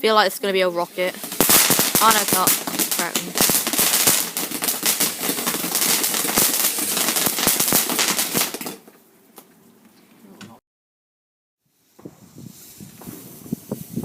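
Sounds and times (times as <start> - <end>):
firework crackling bangs: 0.5 - 8.9, 11.8 - 14.0
faint firework pops: 1.2 - 9.5, 12.0 - 13.6.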